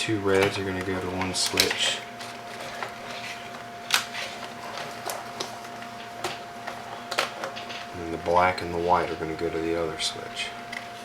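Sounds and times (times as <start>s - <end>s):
wires and small parts clicking: 0.3s - 7.9s.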